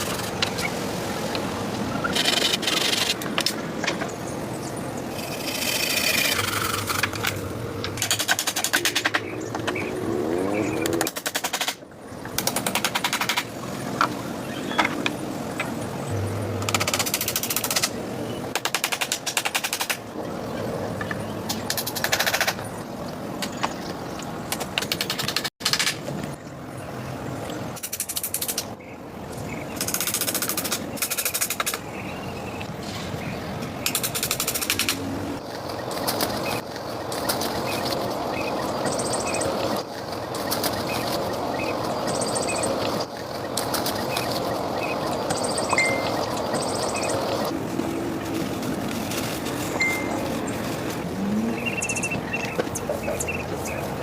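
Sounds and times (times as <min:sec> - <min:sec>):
steady background hiss: 0:00.0 - 0:24.8.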